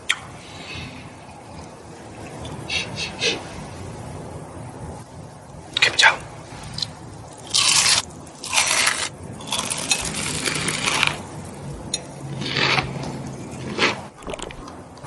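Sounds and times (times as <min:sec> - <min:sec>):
crunching food: 0:06.7 - 0:11.3, 0:12.3 - 0:14.8.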